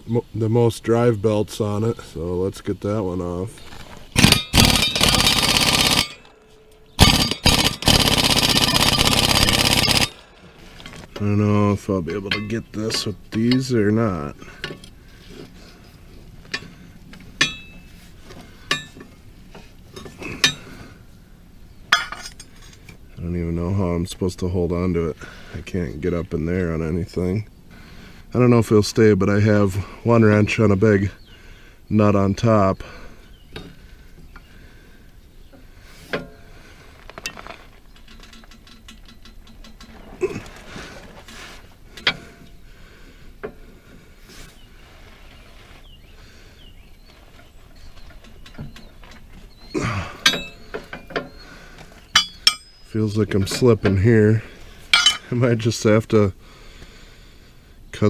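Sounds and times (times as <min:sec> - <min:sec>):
wrenches clinking on metal: 0:04.2 - 0:11.3, 0:17.4 - 0:17.9, 0:18.6 - 0:20.8, 0:21.9 - 0:22.9, 0:37.2 - 0:40.7, 0:48.1 - 0:51.5, 0:52.1 - 0:55.3.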